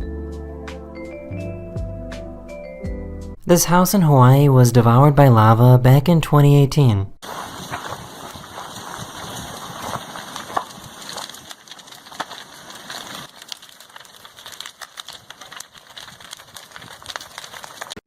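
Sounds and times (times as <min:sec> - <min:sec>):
wooden house burning crackling: 0:07.2 - 0:18.0.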